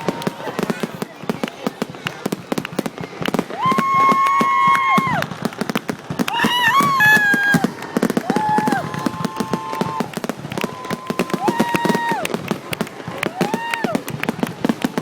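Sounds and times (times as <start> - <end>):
fireworks bangs and crackles: 0.0 - 15.0.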